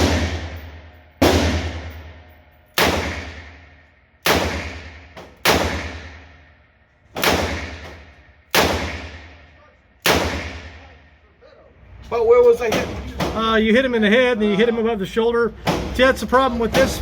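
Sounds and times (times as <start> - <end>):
revolver shots echoing indoors: 0.0 - 11.2.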